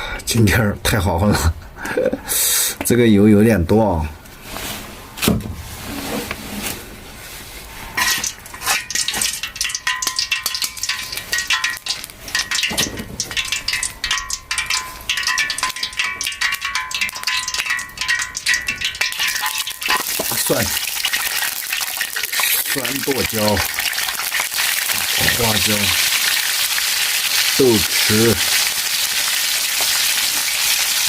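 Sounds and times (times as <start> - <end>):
spatula stirring in pot: 7.9 - 22.7
oil sizzling and popping: 7.9 - 31.0.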